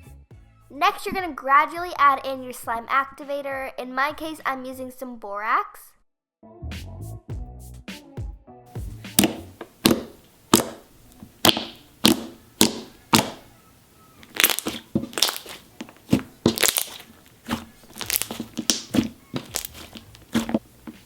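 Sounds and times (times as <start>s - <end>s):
slime being stirred in a bowl: 9.2s - 13.5s, 14.2s - 21.0s.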